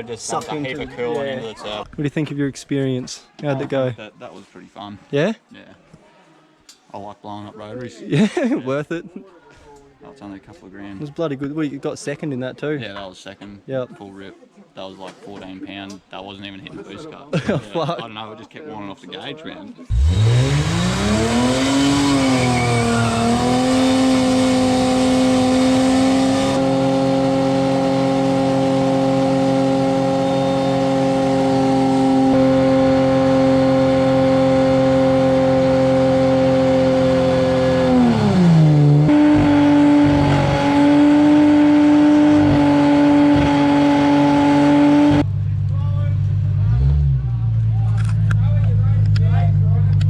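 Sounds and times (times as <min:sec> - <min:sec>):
car engine revving high: 0:19.9 - 0:45.4, 0:46.3 - 0:47.4.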